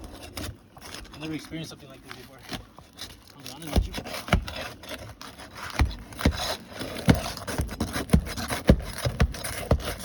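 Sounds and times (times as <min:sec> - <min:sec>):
nail bar scraping shingles: 0:02.4 - 0:10.0.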